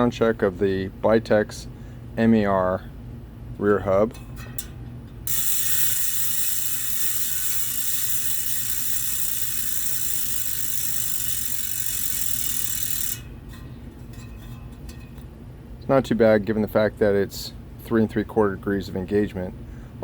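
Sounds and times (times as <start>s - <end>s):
bicycle freehub ratcheting: 4.6s - 13.3s.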